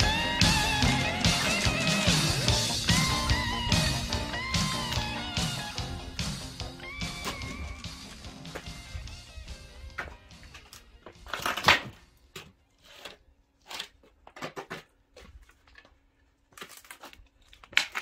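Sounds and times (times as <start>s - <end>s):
music: 0.0s - 12.2s.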